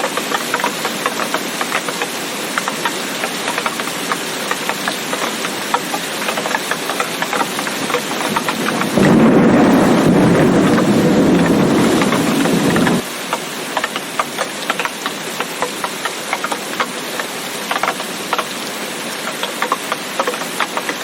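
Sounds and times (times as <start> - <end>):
rain pattering: 0.0 - 21.0
thunder rumble: 7.8 - 13.0.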